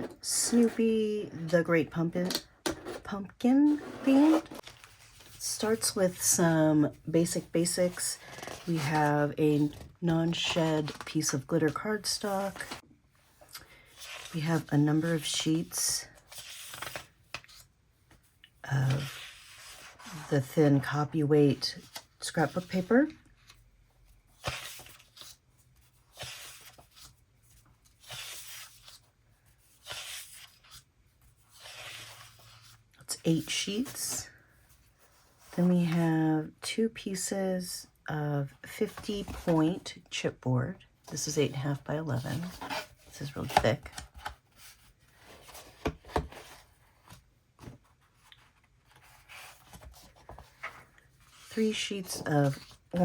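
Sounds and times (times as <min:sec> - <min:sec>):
paper sheets rustling: 0:03.7 - 0:06.3, 0:07.2 - 0:12.8, 0:42.2 - 0:53.0.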